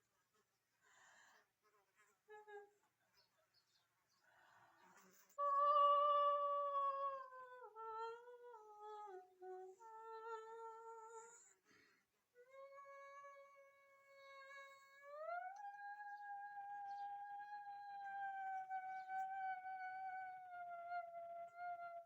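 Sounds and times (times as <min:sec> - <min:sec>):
short breath: 0:00.8 - 0:01.6, 0:11.4 - 0:12.2
woman singing wordless vocalise: 0:05.4 - 0:11.6, 0:12.4 - 0:22.0.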